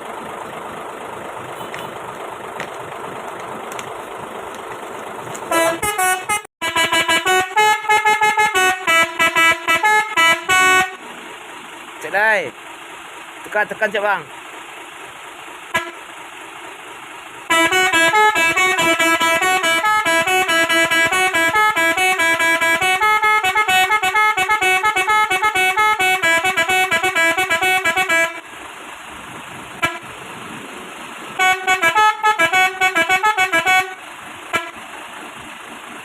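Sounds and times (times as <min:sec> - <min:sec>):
multi-tone horn playing a tune: 0:05.5 - 0:11.0, 0:17.5 - 0:28.4, 0:29.8 - 0:30.1, 0:31.4 - 0:34.8
short horn toot: 0:05.5 - 0:11.0.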